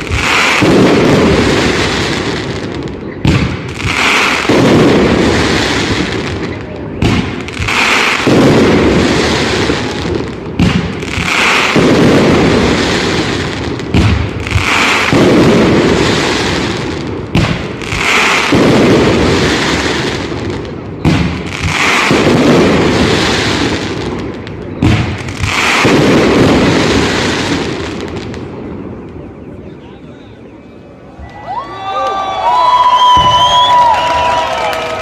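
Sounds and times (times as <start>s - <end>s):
crackling firework bursts: 0.0s - 29.2s, 31.9s - 35.0s
firework bangs: 0.0s - 29.3s, 32.2s - 35.0s.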